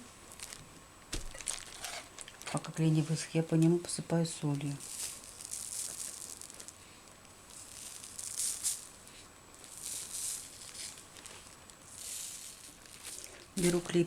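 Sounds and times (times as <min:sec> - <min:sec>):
salt grains falling: 0:04.5 - 0:14.0.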